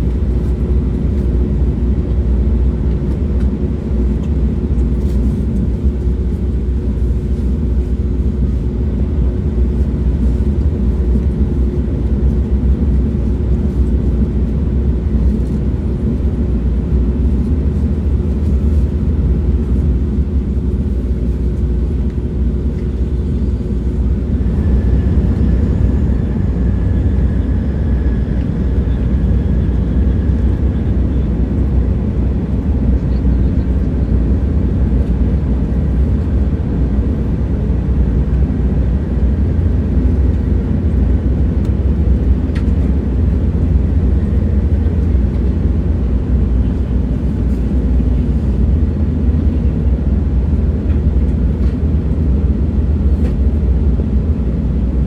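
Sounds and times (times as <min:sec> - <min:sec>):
train rumbling: 0:00.0 - 0:55.0.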